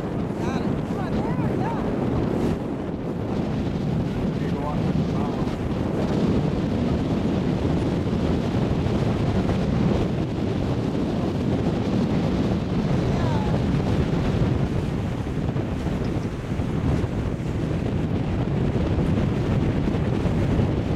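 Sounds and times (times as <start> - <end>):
rushing water: 0.0 - 20.9
wind buffeting microphone: 0.0 - 20.9.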